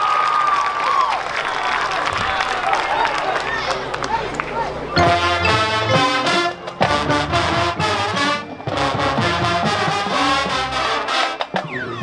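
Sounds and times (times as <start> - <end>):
marching band brass playing: 5.0 - 12.0.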